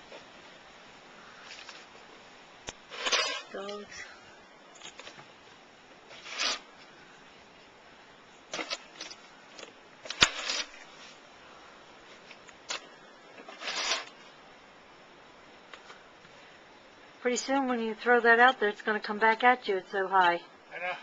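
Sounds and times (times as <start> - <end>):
snow shovel scraping snow: 2.9 - 3.6, 6.1 - 6.7, 10.2 - 11.1, 13.5 - 14.1.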